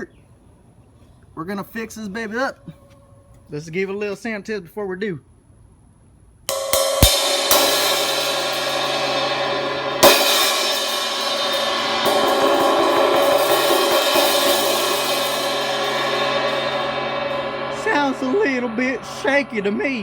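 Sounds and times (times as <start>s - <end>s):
cracked cymbal struck and ringing: 6.5s - 20.0s.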